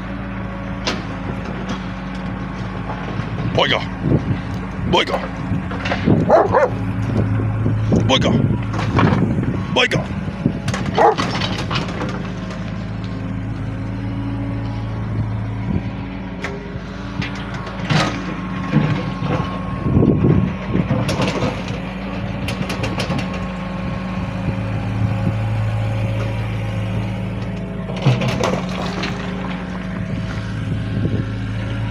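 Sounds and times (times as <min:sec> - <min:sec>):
excavator engine running: 0:00.0 - 0:31.9
clanks and knocks: 0:05.2 - 0:07.3, 0:07.9 - 0:09.4, 0:10.6 - 0:13.2, 0:17.2 - 0:19.6, 0:20.8 - 0:23.5, 0:27.4 - 0:30.1.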